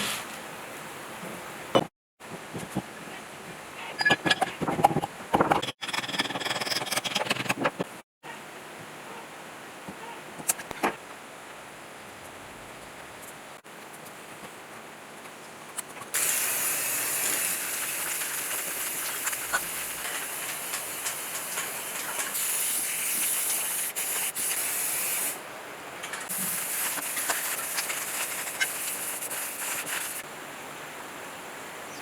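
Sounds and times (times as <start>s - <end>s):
pressurised spray hissing: 26.3s - 30.2s.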